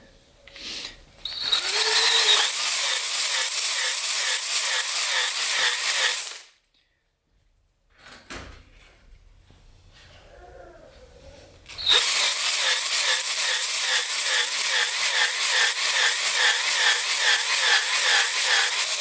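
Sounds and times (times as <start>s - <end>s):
electric drill spinning hone: 1.3s - 6.5s, 11.7s - 19.0s.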